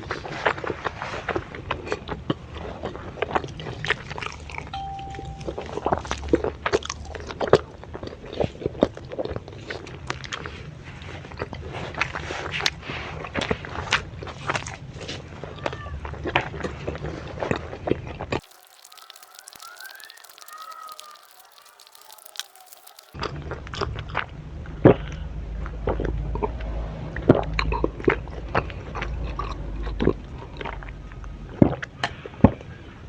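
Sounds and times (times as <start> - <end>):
person crunching and chewing food: 18.4 - 23.2.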